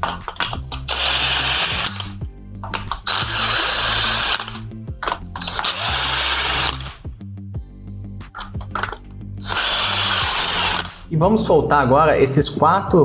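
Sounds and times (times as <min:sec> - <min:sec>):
cordless screwdriver running: 0:00.0 - 0:07.2, 0:08.4 - 0:11.1
background music: 0:00.0 - 0:13.0.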